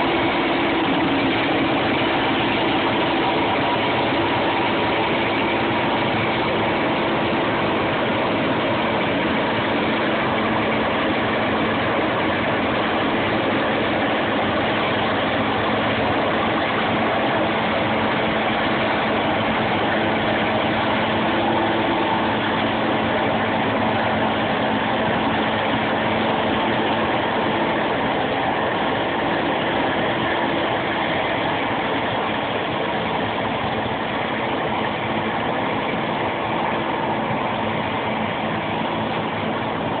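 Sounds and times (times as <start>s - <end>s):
combine harvester running: 0.0s - 40.0s.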